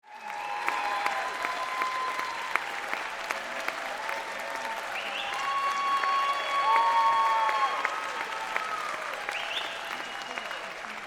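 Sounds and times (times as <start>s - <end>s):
audience applauding: 0.0s - 11.0s.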